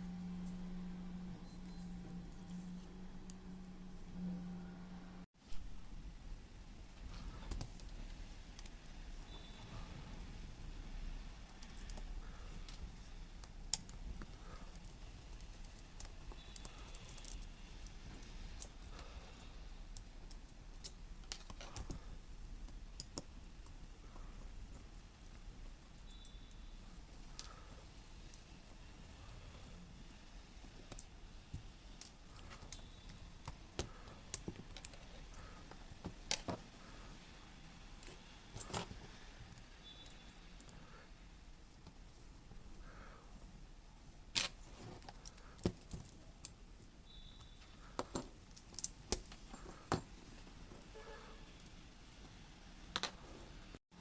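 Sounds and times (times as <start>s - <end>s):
low hum: 0.0s - 7.4s
clicks and taps of small parts: 47.9s - 50.1s.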